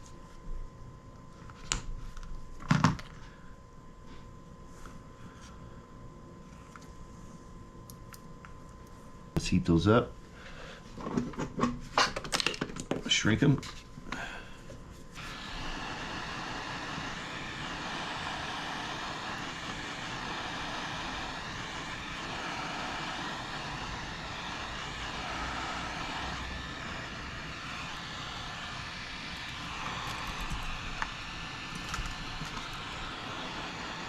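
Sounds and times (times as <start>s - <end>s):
heat gun blowing: 15.2s - 34.0s.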